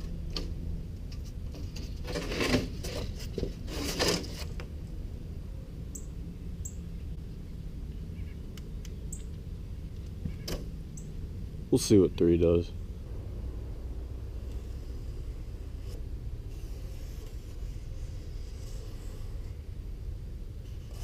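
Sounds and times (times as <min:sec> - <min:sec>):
low hum: 0:00.0 - 0:21.0
foam board rustling: 0:01.3 - 0:04.6
faint ticks and squeaks: 0:07.9 - 0:09.4, 0:10.0 - 0:11.2.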